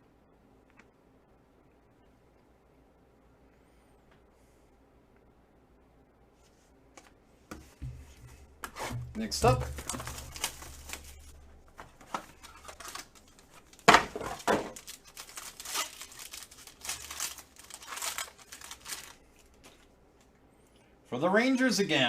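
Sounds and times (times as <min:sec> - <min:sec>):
plastic wrapping crinkling: 0:08.6 - 0:19.9
plastic wrapping ripping: 0:08.7 - 0:19.7.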